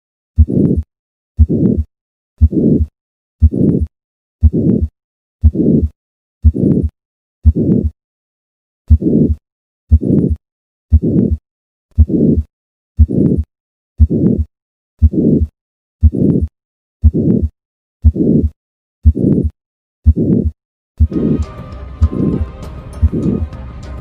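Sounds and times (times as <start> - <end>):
heart murmur: 0.4 - 7.9, 14.0 - 21.4
heartbeat: 0.4 - 8.0, 8.9 - 21.4, 22.0 - 23.4.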